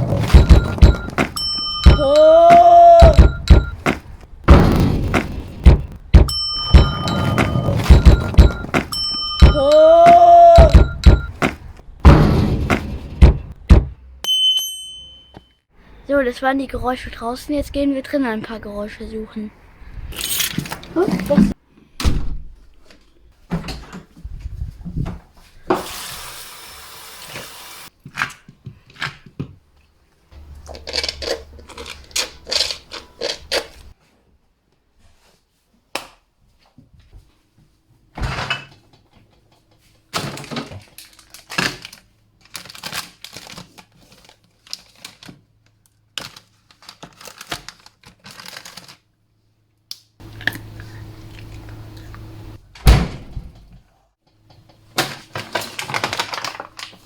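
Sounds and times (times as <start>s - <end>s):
knocks and clatters of objects: 0.0s - 14.0s.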